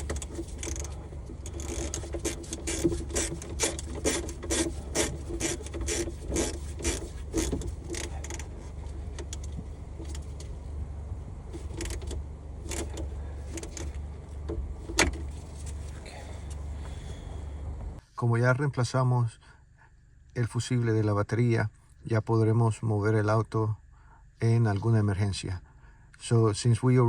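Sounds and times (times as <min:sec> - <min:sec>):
ratchet wrench strokes: 0:00.0 - 0:10.5, 0:11.5 - 0:14.0
steady low hum: 0:00.0 - 0:27.0.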